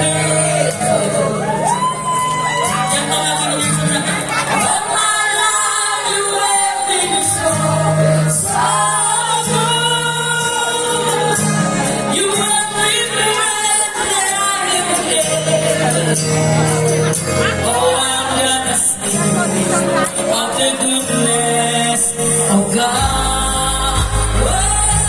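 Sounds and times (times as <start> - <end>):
backing music: 0.0 - 25.0
person singing worship song: 17.4 - 25.0.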